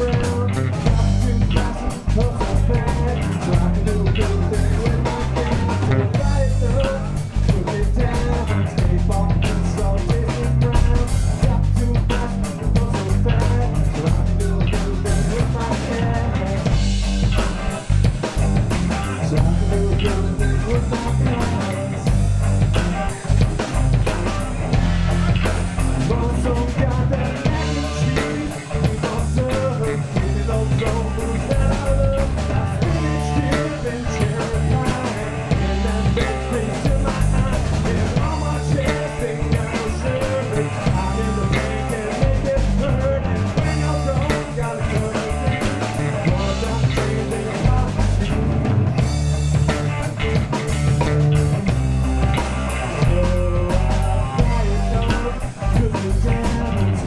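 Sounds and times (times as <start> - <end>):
drum kit: 0.0 - 57.0
live rock band instrumental: 0.0 - 57.0.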